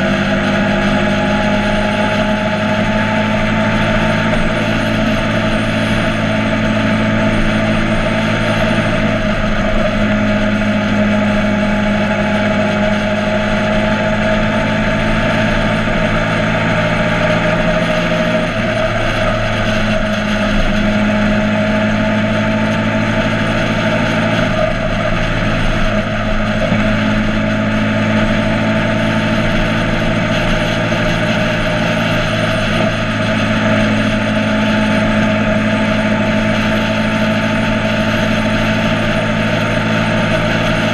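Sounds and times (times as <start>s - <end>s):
motorcycle engine running: 0.0s - 40.9s
rushing noise: 0.0s - 40.9s.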